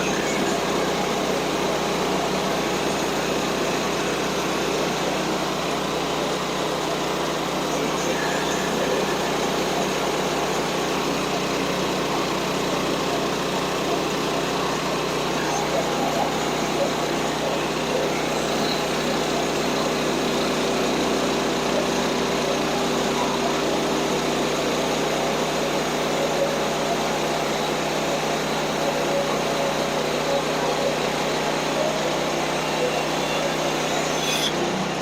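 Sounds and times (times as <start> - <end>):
small gas engine running: 0.0 - 35.0
band saw blade cutting: 33.7 - 35.0.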